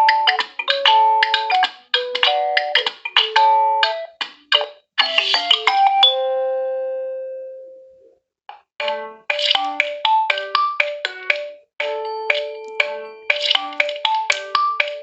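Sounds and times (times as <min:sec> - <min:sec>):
smartphone ringtone melody: 0:05.0 - 0:07.5, 0:08.8 - 0:15.0.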